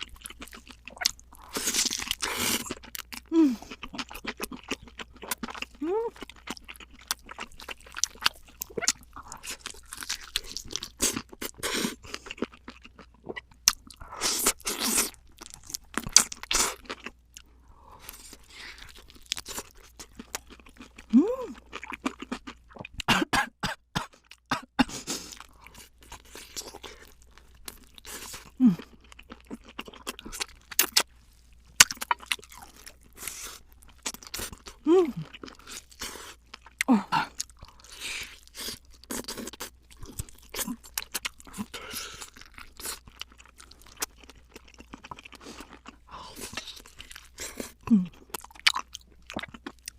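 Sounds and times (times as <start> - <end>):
crunching and chewing fried chicken: 0.0 - 23.1, 24.0 - 49.9.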